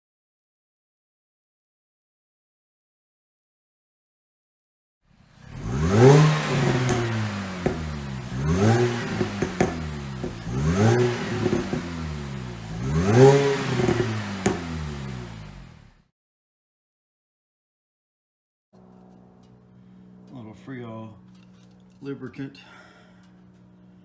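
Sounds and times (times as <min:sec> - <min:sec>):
car engine revving: 0:05.3 - 0:16.0.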